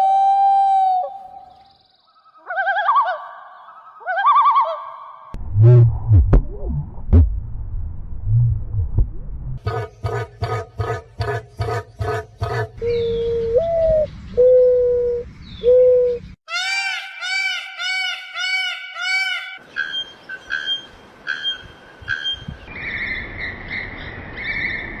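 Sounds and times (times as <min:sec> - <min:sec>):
low hooting bird calls: 0:09.6 - 0:24.8
sharp bird calls: 0:15.3 - 0:24.9.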